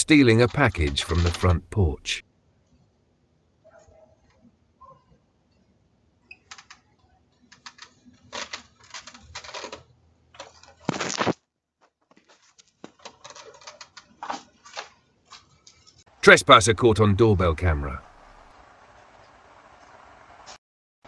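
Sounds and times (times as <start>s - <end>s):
rapid clicks near microphone: 0.0s - 2.2s.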